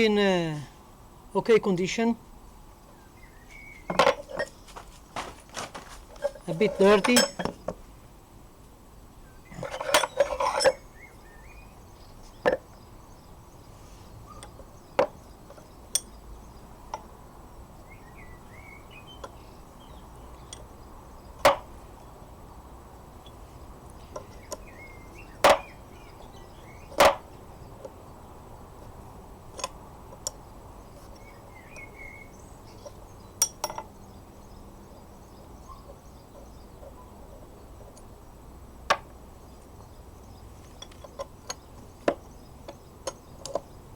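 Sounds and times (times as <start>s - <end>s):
steel parts clinking and knocking: 3.9s - 4.6s, 5.2s - 7.8s, 9.5s - 10.8s, 33.4s - 33.9s.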